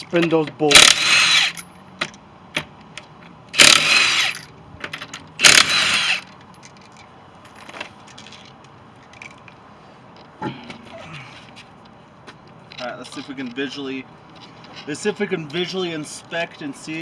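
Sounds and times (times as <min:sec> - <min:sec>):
impact wrench spinning: 0:00.7 - 0:01.7, 0:03.6 - 0:04.5, 0:05.4 - 0:06.3.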